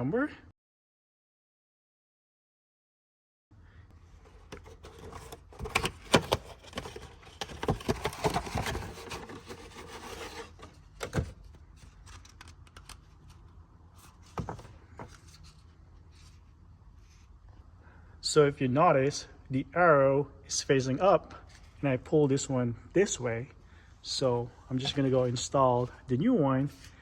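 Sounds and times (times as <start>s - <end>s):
air filter rubbing and scraping: 4.3s - 10.8s.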